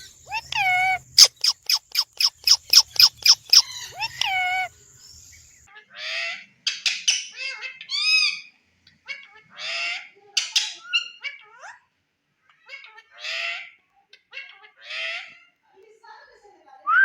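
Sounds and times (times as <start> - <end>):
parakeet squawking: 0.0 - 4.7
parakeet chirps and clicks: 0.3 - 4.7.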